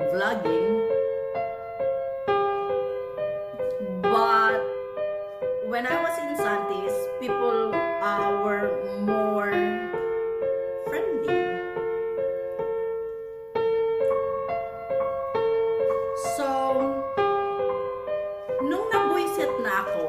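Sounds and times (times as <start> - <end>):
gentle piano melody: 0.0 - 20.0.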